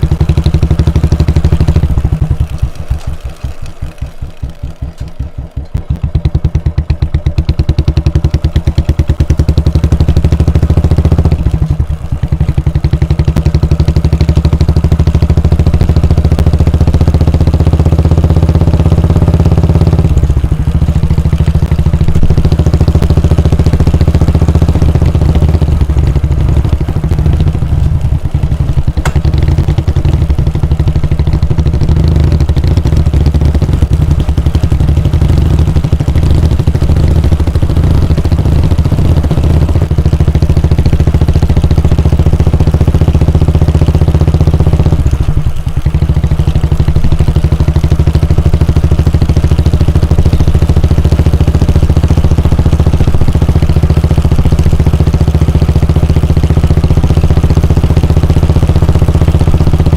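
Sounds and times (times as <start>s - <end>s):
motorcycle engine exhaust thump: 0.0s - 59.9s
sharp click: 29.0s - 29.5s.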